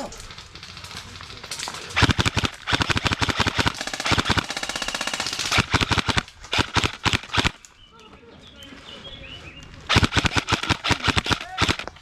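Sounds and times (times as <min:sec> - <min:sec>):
airsoft rifle firing bursts: 0:02.0 - 0:07.6, 0:09.9 - 0:12.0.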